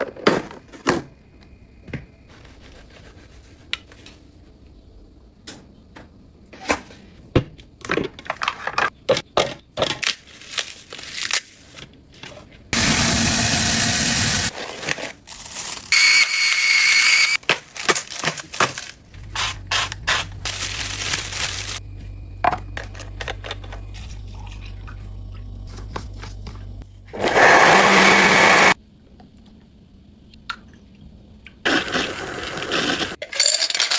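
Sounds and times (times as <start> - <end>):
steady low hum: 19.1 - 27.2
kitchen clicks and clatter: 31.8 - 33.9.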